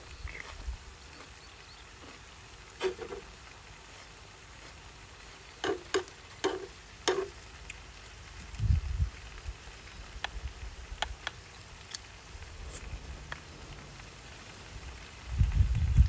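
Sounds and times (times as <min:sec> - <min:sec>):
wind rumble on microphone: 0:00.0 - 0:00.9, 0:08.4 - 0:11.2, 0:12.3 - 0:16.0
crisp eating crunches: 0:00.1 - 0:02.2.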